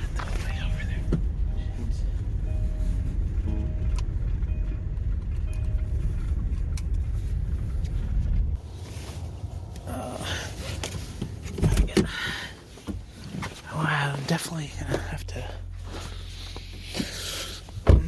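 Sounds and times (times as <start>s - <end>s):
car engine rumbling: 0.0s - 18.0s
rustling: 5.8s - 17.8s.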